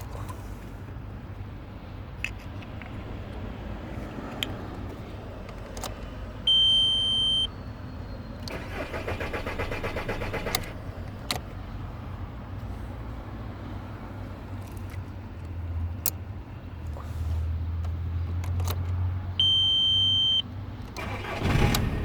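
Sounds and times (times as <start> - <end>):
starter cranking engine: 8.4 - 10.8, 20.9 - 22.0.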